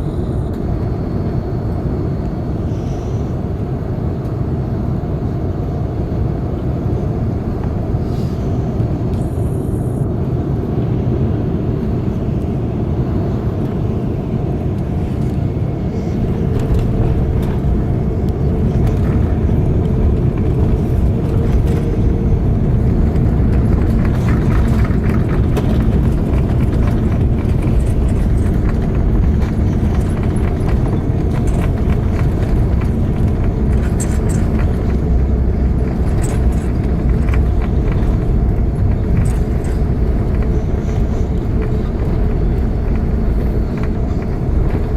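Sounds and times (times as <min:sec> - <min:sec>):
low rumble of engines and airflow: 0:00.0 - 0:44.9
rattling clicks and knocks: 0:16.4 - 0:44.9.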